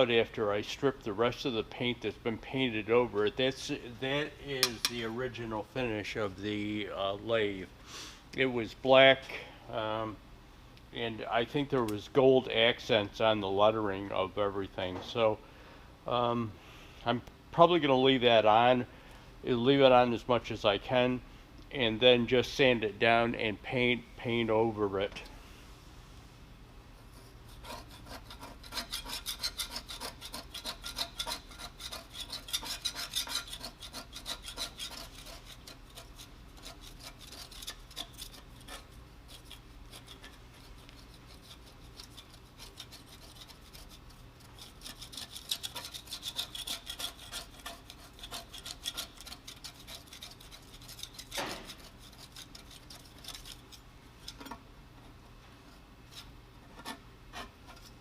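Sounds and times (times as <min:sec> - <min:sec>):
scraper rasping on metal: 0:27.0 - 0:54.5, 0:56.1 - 0:58.0.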